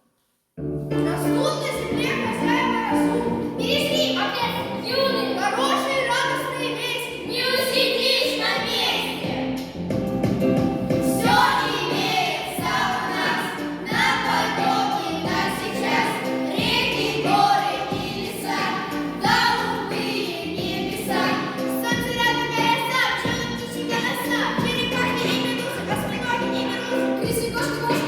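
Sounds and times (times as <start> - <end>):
group of voices singing: 7.2 - 9.7, 11.0 - 28.0.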